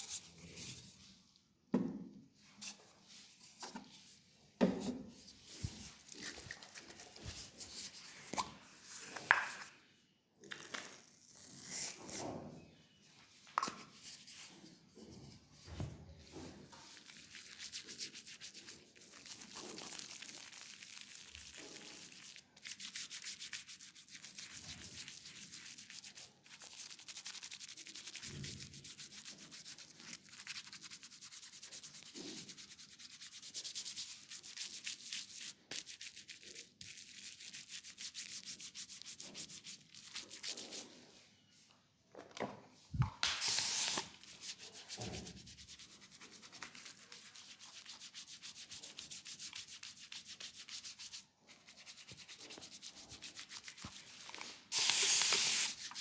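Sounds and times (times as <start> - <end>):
hands rubbing oiled skin: 17.0 - 40.9, 43.4 - 54.2.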